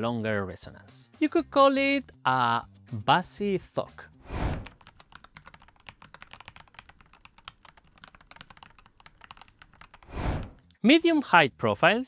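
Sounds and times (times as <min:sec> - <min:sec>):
brief rushing sound: 0:04.2 - 0:04.7, 0:10.1 - 0:10.6
mechanical keyboard typing: 0:04.6 - 0:10.1.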